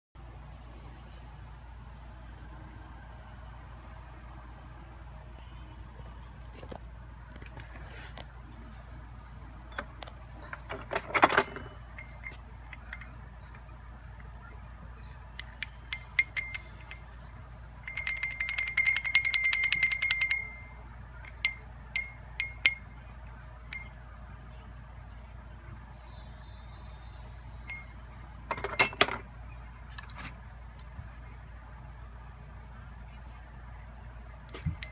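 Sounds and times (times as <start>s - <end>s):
steady low hum: 0.2s - 34.9s
metal parts clinking: 9.7s - 13.1s, 28.5s - 29.2s
ringing metal rattle: 9.7s - 13.1s, 15.4s - 17.2s, 17.8s - 23.9s, 27.7s - 29.2s.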